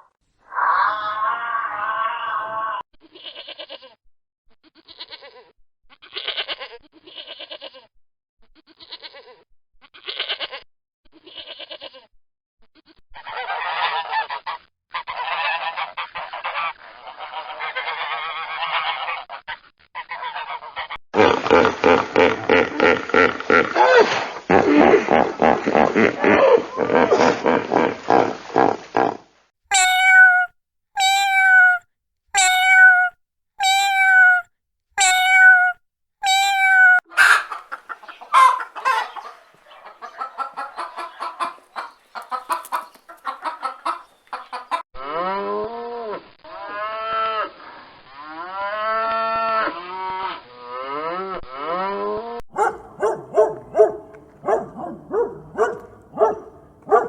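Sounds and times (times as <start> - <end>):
farm animal calls: 13.2 - 28.2, 29.7 - 31.8, 32.4 - 34.4, 35.0 - 44.8, 52.6 - 57.0.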